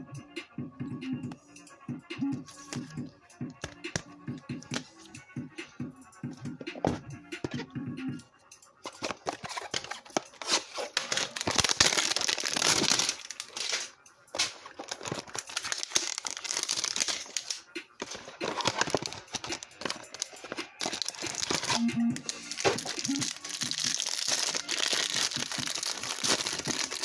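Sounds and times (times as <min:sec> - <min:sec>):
plastic wrapping tearing and crinkling: 0:08.9 - 0:27.0.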